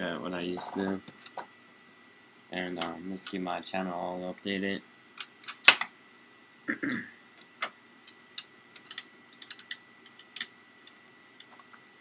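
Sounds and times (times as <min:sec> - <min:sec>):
plastic parts clicking and tapping: 0:08.4 - 0:10.5.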